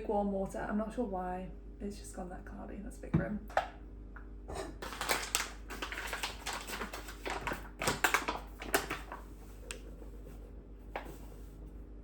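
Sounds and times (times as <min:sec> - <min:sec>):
packets crinkling and rustling: 0:04.8 - 0:10.2.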